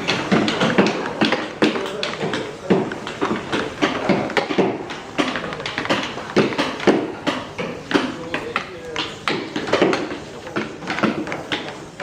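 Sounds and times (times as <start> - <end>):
mallets tapping on chisels: 0.0 - 12.0.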